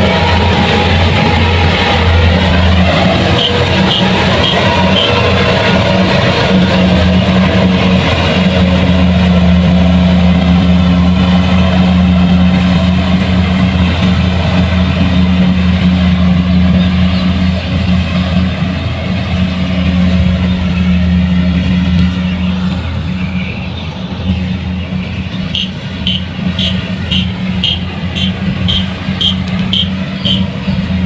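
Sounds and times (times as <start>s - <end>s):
combine harvester engine droning: 0.0s - 31.0s
machinery clatter: 0.0s - 31.0s.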